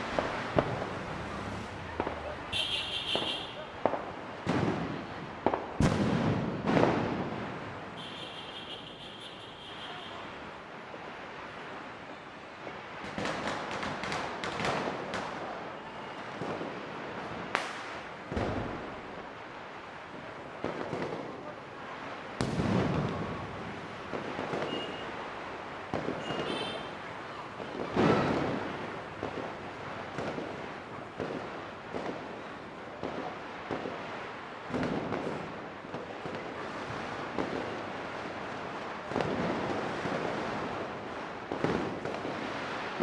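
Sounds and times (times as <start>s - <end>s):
heavy firework booms: 0.0s - 8.0s, 22.4s - 33.9s
firecrackers crackling and banging: 0.0s - 43.0s.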